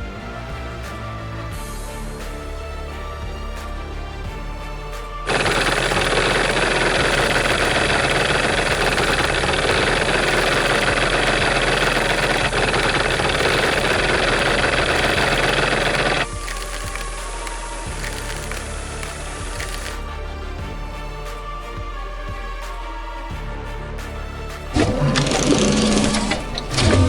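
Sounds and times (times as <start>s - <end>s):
background music: 0.0s - 27.0s
chainsaw engine running: 5.3s - 19.9s, 24.8s - 27.0s.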